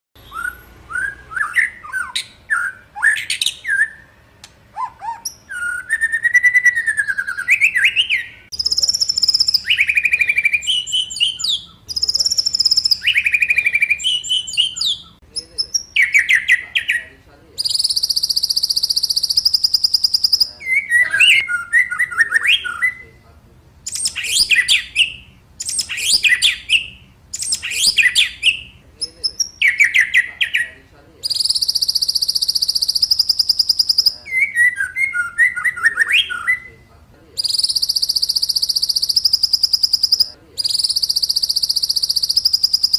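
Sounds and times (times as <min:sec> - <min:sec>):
bird singing whistled phrases: 0:00.2 - 0:04.2, 0:04.8 - 0:23.2, 0:23.9 - 0:42.9.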